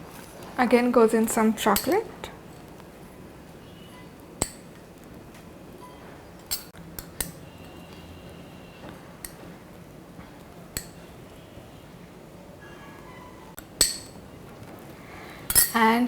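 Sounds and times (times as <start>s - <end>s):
faint room noise: 0.0s - 16.0s
utensil clinking against bowl: 15.5s - 15.8s.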